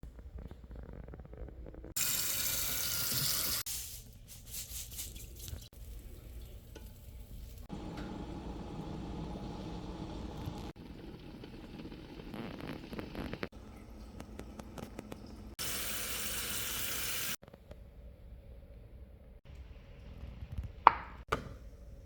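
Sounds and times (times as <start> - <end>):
hot oil sizzling: 2.0 - 4.1, 5.5 - 13.5, 14.4 - 17.4.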